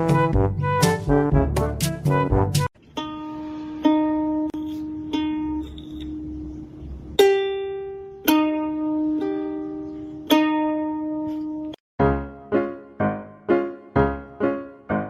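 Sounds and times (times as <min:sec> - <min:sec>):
slow plucked-string melody: 0:02.0 - 0:12.7.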